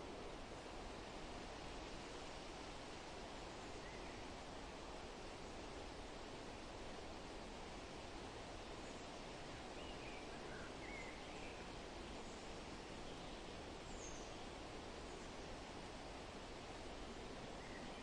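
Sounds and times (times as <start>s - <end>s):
wind rustling forest leaves: 0.0s - 18.0s
soft bird chirps: 3.6s - 4.3s, 8.8s - 15.5s, 17.0s - 18.0s.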